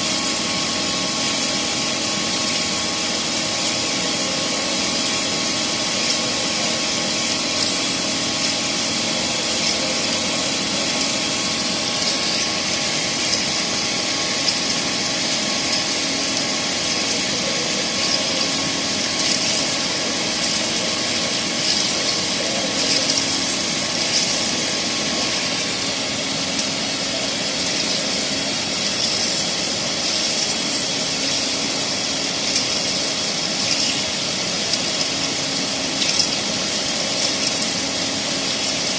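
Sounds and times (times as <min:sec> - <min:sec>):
boring mill humming: 0:00.0 - 0:38.9
scratchy cutting noise: 0:03.8 - 0:31.5.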